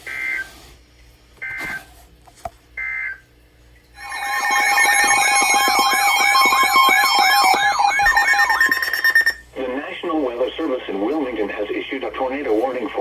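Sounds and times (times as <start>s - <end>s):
data tone bursts: 4.0s - 9.4s
warbling alert tone: 4.0s - 9.4s.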